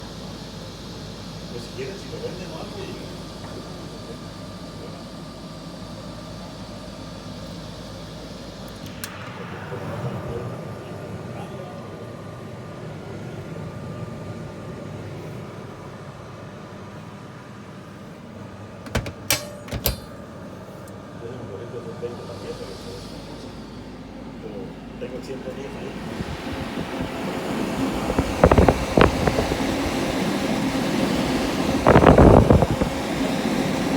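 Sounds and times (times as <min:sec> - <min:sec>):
oven humming: 0:00.0 - 0:33.9
sharp click: 0:18.9 - 0:20.2.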